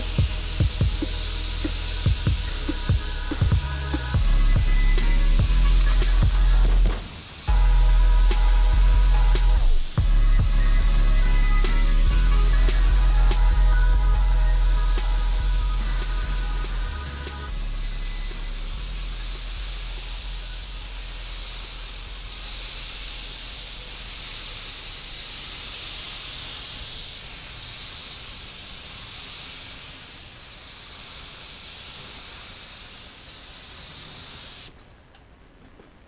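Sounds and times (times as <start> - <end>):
paint spray gun hissing: 0.0 - 34.8.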